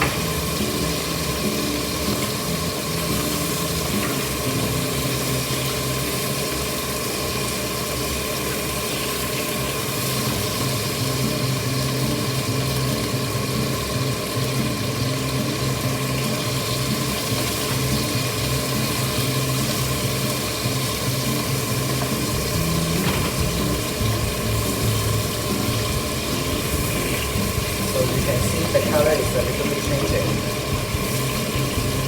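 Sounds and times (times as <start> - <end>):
ribs sizzling in hot oil: 0.0 - 32.0
low motor hum: 21.1 - 32.0.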